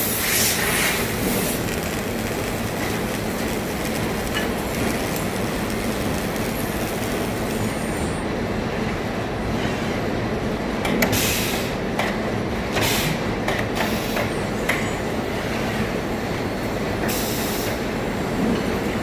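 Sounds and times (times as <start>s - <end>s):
short hissing bursts: 0.0s - 7.8s
industrial machinery rumbling: 0.0s - 10.8s.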